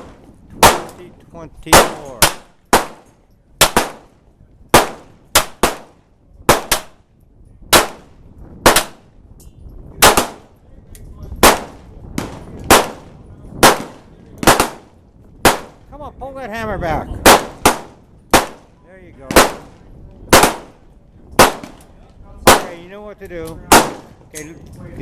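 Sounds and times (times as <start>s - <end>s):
gunshots with ringing echo: 0.0s - 1.0s, 1.7s - 4.1s, 4.7s - 7.0s, 7.7s - 9.1s, 10.0s - 10.6s, 11.4s - 15.9s, 17.2s - 22.9s, 23.7s - 24.2s.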